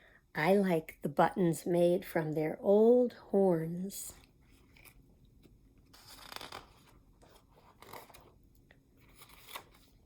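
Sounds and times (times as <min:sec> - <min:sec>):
paper page turning: 0:05.9 - 0:08.4, 0:09.0 - 0:10.0.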